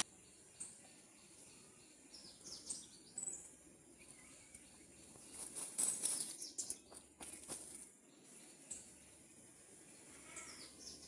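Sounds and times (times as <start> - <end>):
small birds chirping: 0.0 - 11.0
rustling: 5.2 - 6.4.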